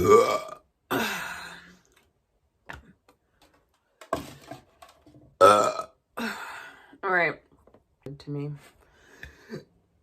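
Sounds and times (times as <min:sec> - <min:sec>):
woman burping: 0:00.0 - 0:01.7, 0:05.4 - 0:06.7.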